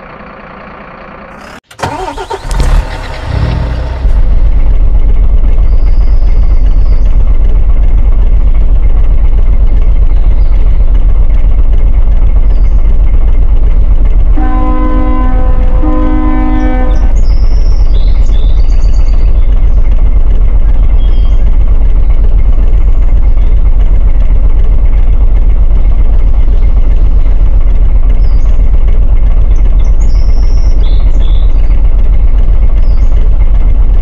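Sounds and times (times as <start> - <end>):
heavy engine starting and running: 0.0 - 34.0
horn with held tones: 14.4 - 17.3.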